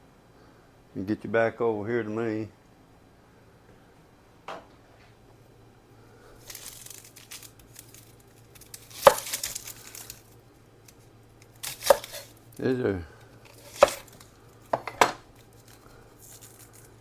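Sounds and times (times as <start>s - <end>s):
onion skin crinkling and tearing: 6.3s - 17.0s.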